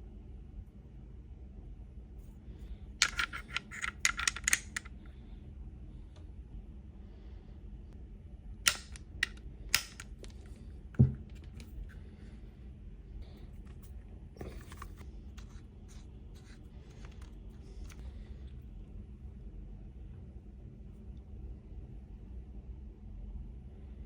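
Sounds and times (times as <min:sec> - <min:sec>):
steady low hum: 0:00.0 - 0:24.0
pistol handling clicks: 0:08.7 - 0:10.4
dull thump: 0:11.0 - 0:11.3.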